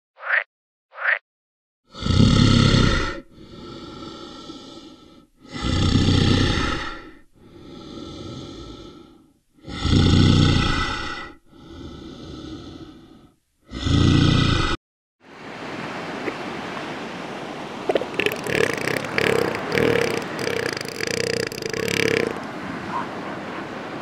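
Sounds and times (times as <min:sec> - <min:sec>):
animal breathing heavily: 0:18.0 - 0:22.5.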